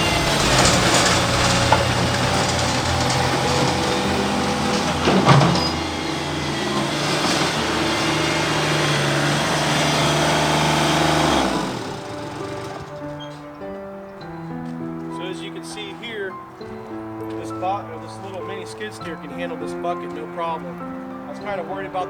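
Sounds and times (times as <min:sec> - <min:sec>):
loud metallic knock: 0:00.0 - 0:12.5
skid steer engine running: 0:00.0 - 0:13.8
background music: 0:00.0 - 0:22.0.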